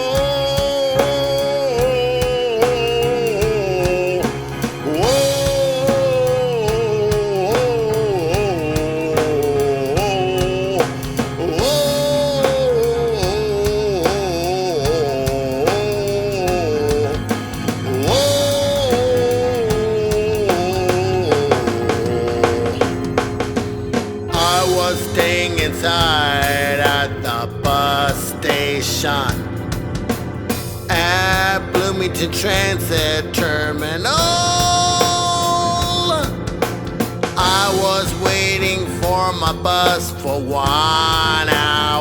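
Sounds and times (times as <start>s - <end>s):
bass: 0.0s - 42.0s
drum beat: 0.0s - 42.0s
gliding lead melody: 0.0s - 42.0s.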